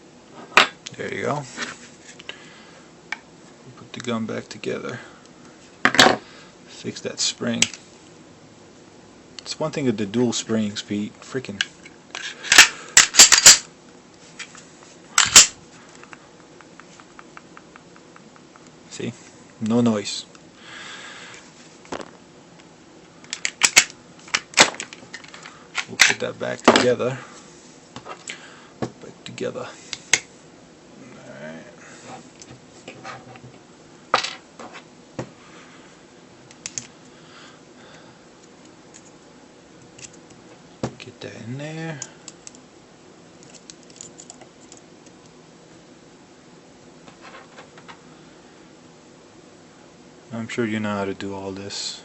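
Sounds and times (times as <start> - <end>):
pistol parts clacking: 12.5 - 13.6, 15.2 - 15.5, 23.3 - 26.2.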